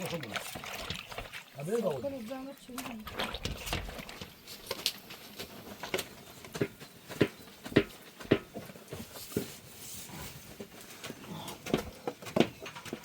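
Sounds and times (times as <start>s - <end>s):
footsteps walking: 4.1s - 13.0s.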